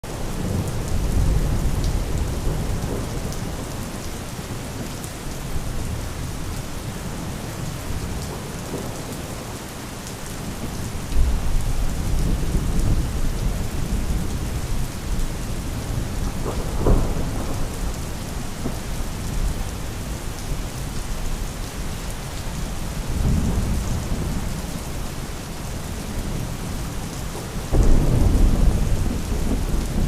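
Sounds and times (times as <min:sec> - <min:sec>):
steady rain falling: 0:00.0 - 0:30.0
distant thunder rumbling: 0:15.9 - 0:19.6.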